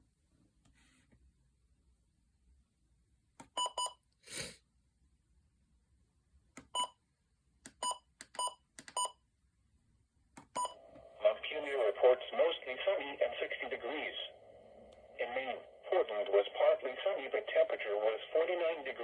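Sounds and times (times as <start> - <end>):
radio button beeps: 10.5 - 10.8
radio hiss: 10.8 - 19.0.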